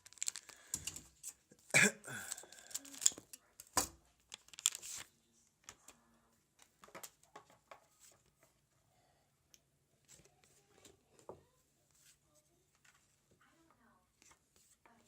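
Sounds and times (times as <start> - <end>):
trading cards clicking and rustling: 0.0 - 6.0.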